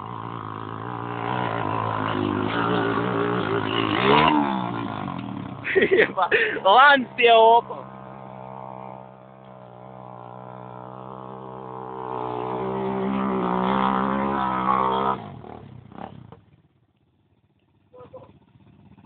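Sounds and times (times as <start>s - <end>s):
atv engine running: 0.0s - 19.0s.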